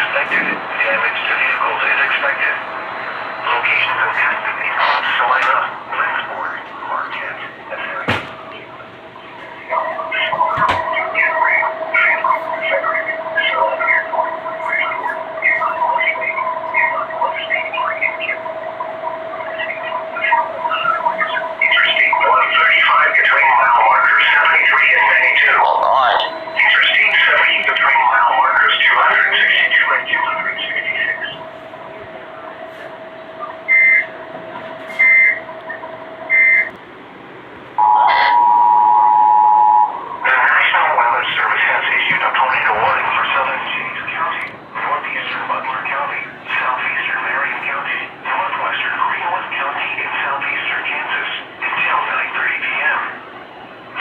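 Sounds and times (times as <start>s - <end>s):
garbled radio voice: 0.0s - 2.7s, 3.4s - 8.7s, 9.6s - 18.6s, 19.2s - 32.9s, 37.8s - 38.4s, 40.2s - 53.2s
steady high hum: 0.0s - 54.0s
two-tone alert signal: 32.7s - 36.7s, 37.8s - 40.0s.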